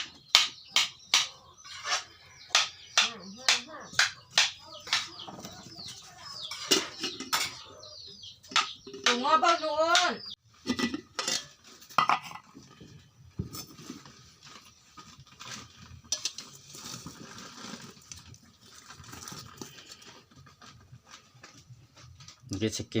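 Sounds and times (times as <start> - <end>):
cutlery and dishes clinking: 6.4 - 7.7, 10.7 - 12.5.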